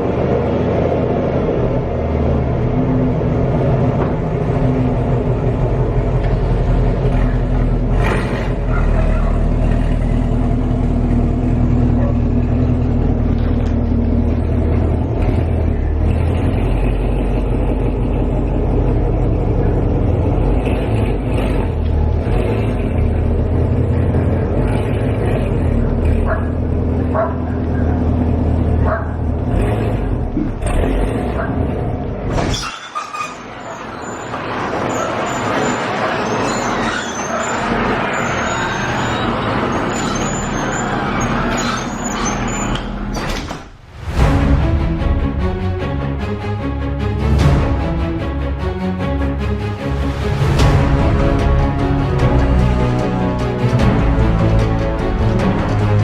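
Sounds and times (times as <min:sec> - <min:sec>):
car engine running steadily: 0:00.0 - 0:32.4.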